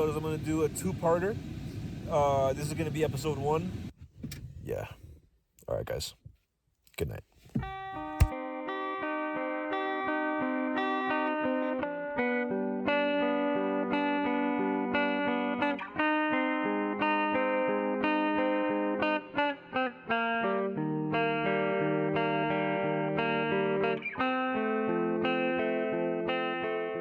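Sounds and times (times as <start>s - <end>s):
plucked guitar melody: 7.6s - 27.0s.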